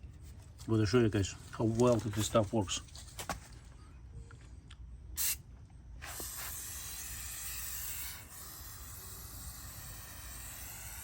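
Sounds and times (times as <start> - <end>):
aerosol can spraying: 5.2 - 5.4, 6.0 - 11.0.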